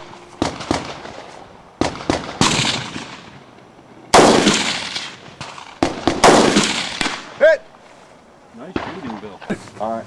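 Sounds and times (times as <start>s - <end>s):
rifle shots with echo: 0.4s - 1.2s, 1.8s - 3.4s, 4.1s - 7.4s.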